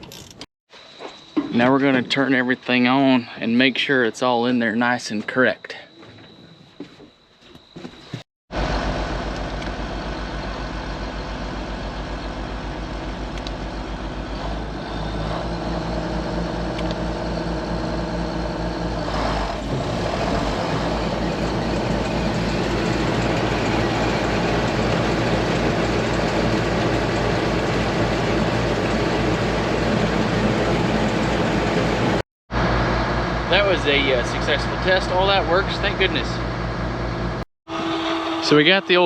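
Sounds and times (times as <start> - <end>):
combine harvester running: 8.5 - 39.0.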